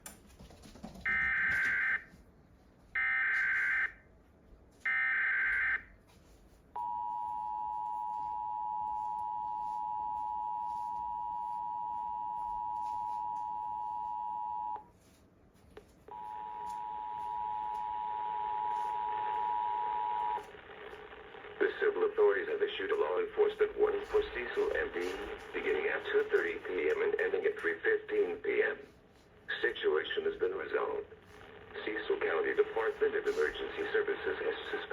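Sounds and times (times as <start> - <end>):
radio hiss: 18.9 - 28.8, 29.4 - 34.9.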